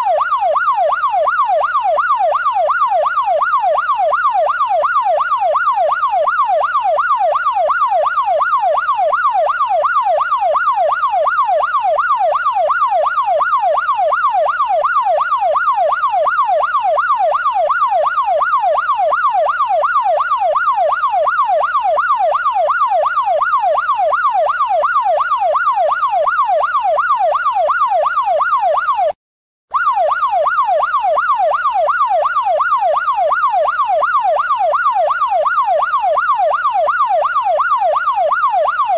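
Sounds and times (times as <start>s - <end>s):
police siren yelping: 0.0s - 38.9s.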